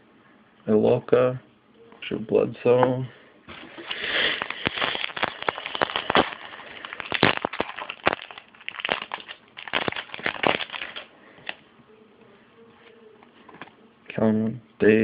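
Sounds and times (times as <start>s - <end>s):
foil wrapper crinkling and tearing: 3.6s - 11.6s.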